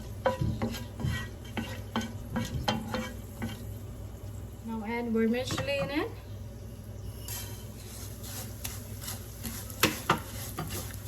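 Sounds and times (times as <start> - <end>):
utensil scraping a pan: 0.0 - 3.8, 7.2 - 11.0
sizzling in a pan: 0.0 - 11.0.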